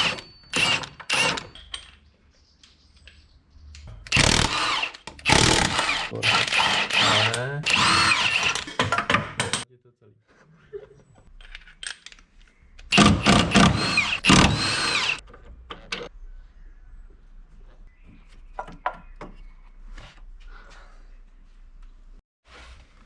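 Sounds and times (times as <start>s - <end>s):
power tool motor whirring: 0.0s - 1.5s, 4.1s - 8.7s, 12.9s - 15.2s
tools clicking and knocking: 0.0s - 9.7s, 11.3s - 16.1s.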